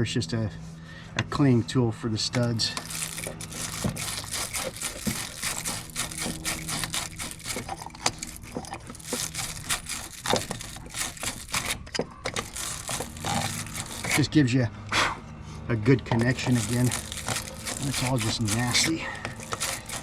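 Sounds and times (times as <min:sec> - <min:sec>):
wire brush scraping metal: 0:02.7 - 0:14.3, 0:16.2 - 0:20.0.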